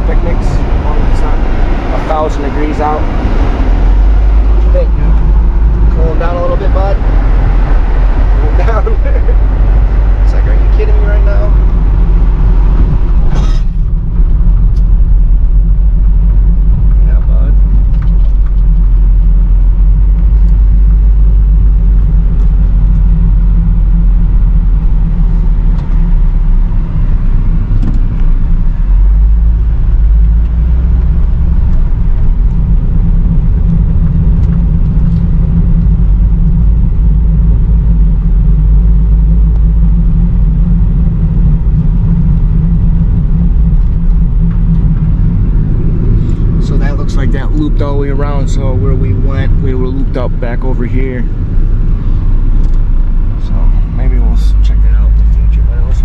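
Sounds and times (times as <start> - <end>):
van driving low rumble: 0.0 - 56.0.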